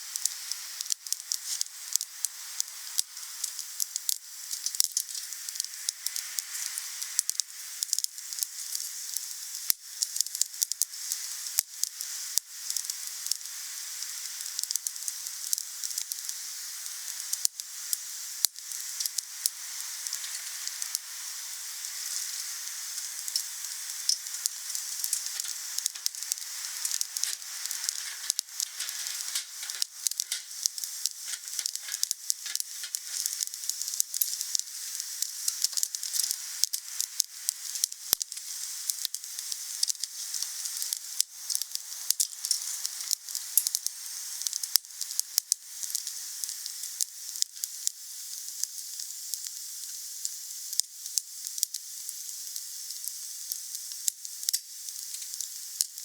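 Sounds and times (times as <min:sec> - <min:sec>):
wood fire crackling: 0:14.3 - 0:17.5, 0:18.4 - 0:43.8.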